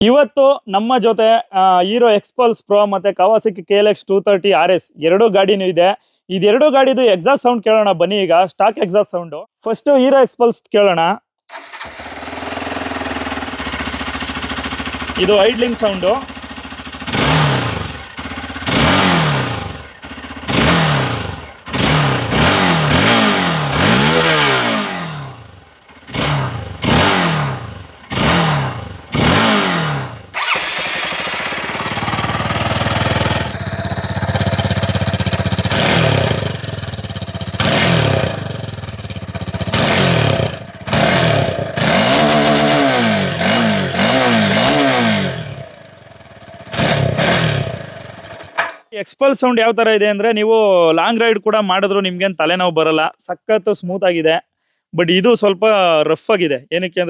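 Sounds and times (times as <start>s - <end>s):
motorcycle engine revving: 11.5s - 48.8s.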